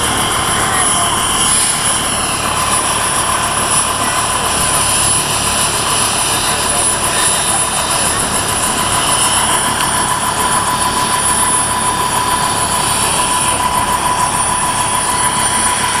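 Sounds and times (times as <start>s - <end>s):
helicopter roar and whine: 0.0s - 16.0s.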